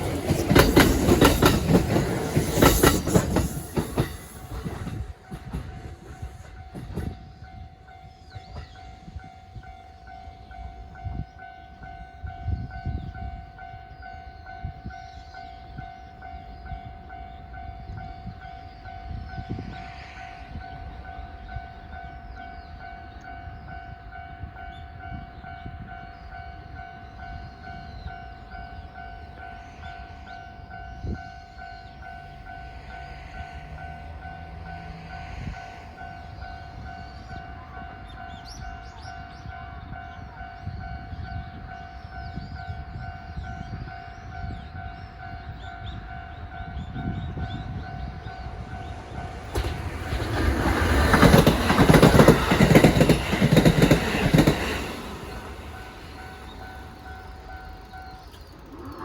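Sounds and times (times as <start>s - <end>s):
wheels clattering over rail joints: 0.0s - 7.2s, 48.8s - 58.7s
electric train passing: 0.0s - 59.0s
level-crossing warning bell: 0.0s - 59.0s.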